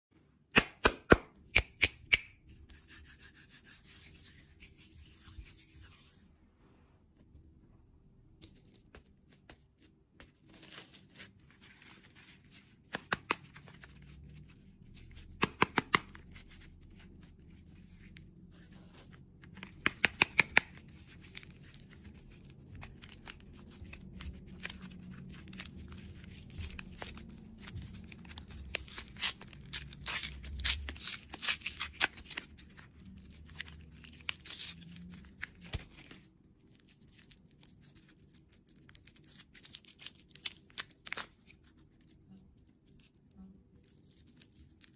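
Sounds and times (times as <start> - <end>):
crinkly packaging tearing: 20.6 - 42.0.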